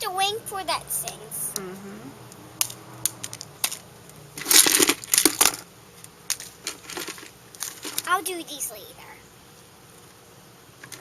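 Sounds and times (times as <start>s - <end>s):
plastic toy pieces clattering: 4.4s - 5.6s, 6.3s - 8.1s.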